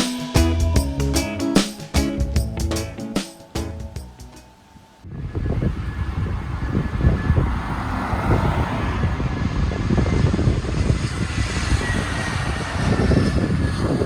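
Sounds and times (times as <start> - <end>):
vehicle rumble: 0.4 - 14.0.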